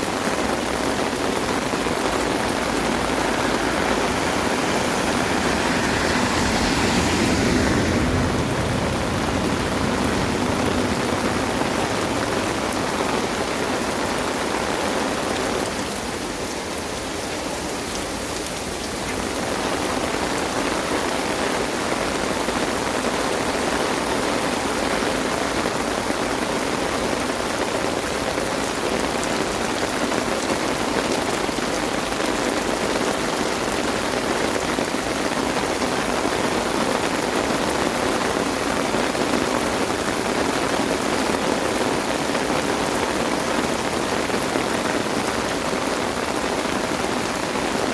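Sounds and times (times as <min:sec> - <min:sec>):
heavy rain pouring: 0:00.0 - 0:47.9.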